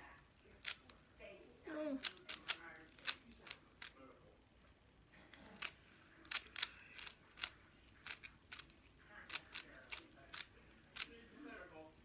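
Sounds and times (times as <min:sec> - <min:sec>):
puzzle cube clicking: 0:02.0 - 0:04.0, 0:05.5 - 0:11.1.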